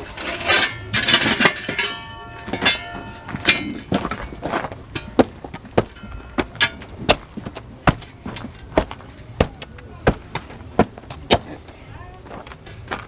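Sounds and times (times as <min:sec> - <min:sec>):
metal scrape: 0:00.0 - 0:08.9
metallic ring: 0:00.0 - 0:11.6
sharp taps and knocks: 0:02.4 - 0:11.6.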